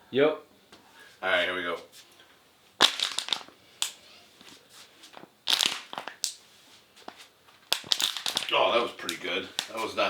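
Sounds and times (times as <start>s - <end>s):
back cracking pops: 2.8s - 4.0s, 5.1s - 6.4s, 7.0s - 9.9s.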